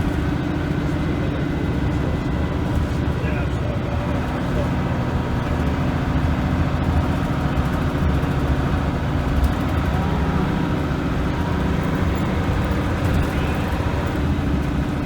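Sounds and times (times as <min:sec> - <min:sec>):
bus diesel engine running: 0:00.0 - 0:15.0.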